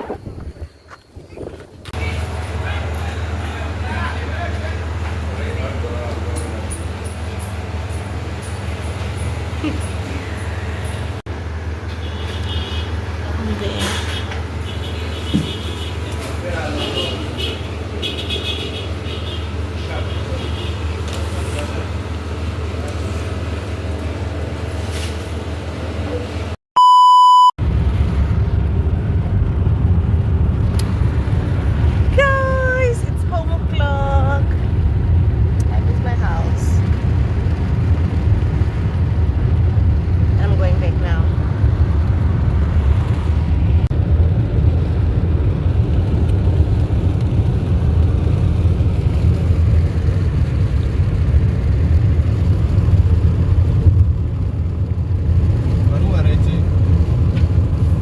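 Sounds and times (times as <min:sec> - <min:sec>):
vehicle road noise rumble: 0:00.0 - 0:26.6, 0:27.6 - 0:58.0
loud pure beep: 0:26.8 - 0:27.6.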